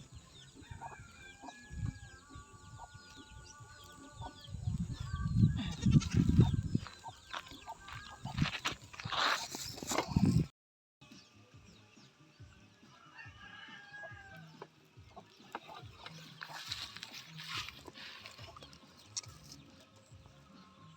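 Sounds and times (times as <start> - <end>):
small birds chirping: 0.0 - 10.5, 14.2 - 20.9
chickens clucking: 0.1 - 10.3, 14.4 - 19.9
goats bleating: 5.6 - 6.5.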